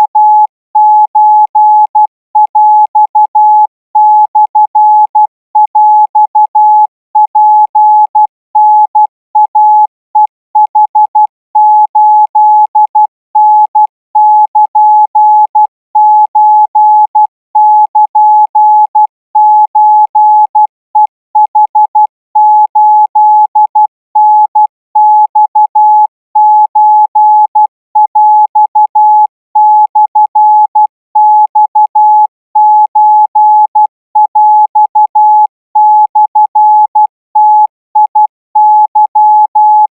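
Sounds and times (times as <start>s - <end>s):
morse code beeps: 0.0s - 25.8s, 26.7s - 37.1s.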